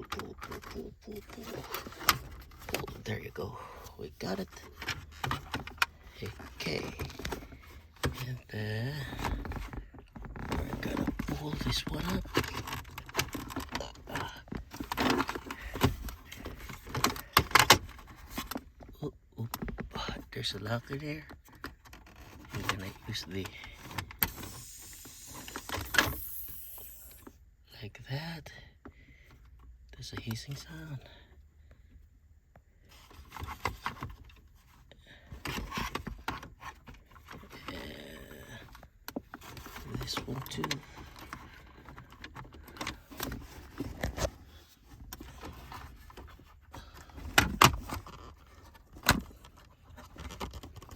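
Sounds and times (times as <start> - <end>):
plastic trim scraping and rubbing: 0.0 - 18.9, 35.4 - 50.9.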